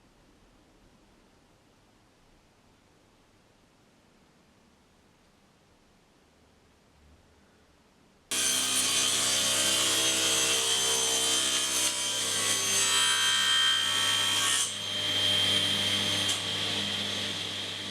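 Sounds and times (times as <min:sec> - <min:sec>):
table saw cutting wood: 0:08.3 - 0:17.9.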